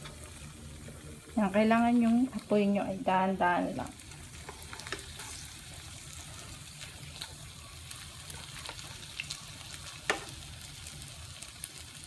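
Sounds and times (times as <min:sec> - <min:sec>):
food sizzling in oil: 0:00.0 - 0:12.0.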